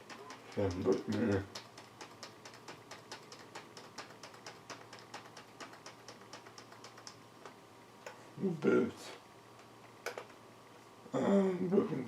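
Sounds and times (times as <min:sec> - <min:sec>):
keyboard keys tapping: 0:00.0 - 0:07.2.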